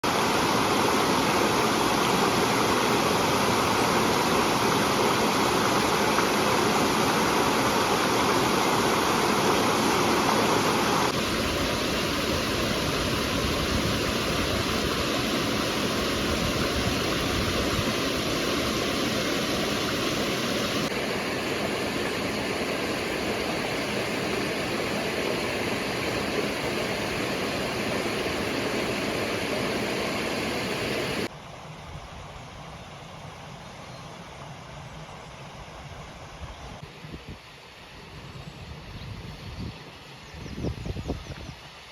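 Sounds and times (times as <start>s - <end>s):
water rushing over rocks: 0.0s - 31.3s.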